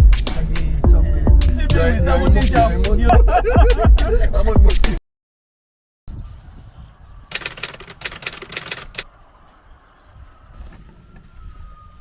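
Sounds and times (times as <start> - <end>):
low rumble: 0.4 - 4.7.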